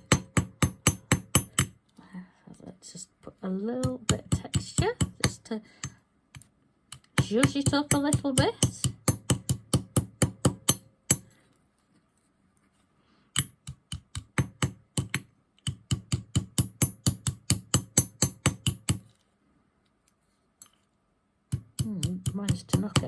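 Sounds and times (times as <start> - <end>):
hammer tapping on metal: 0.0 - 1.8, 3.8 - 6.0, 6.9 - 11.3, 13.4 - 19.0, 21.5 - 23.0.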